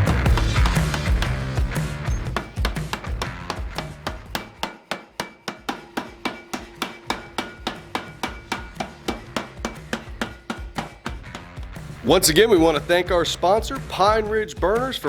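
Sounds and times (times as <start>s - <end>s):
hammer striking steel on anvil: 0.0s - 12.8s.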